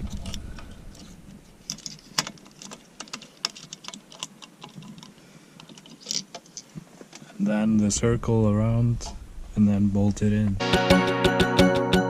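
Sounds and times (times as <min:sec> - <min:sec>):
light clicks and rattles of wires: 0:00.0 - 0:07.3.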